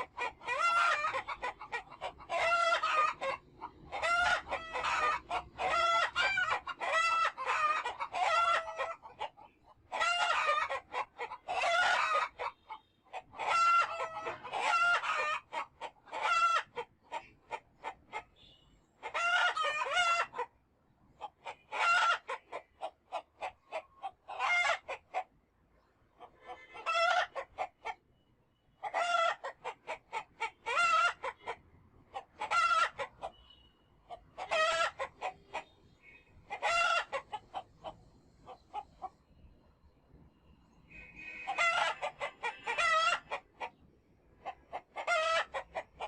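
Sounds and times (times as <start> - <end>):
chickens clucking and calling: 0.0 - 28.2, 28.8 - 46.0.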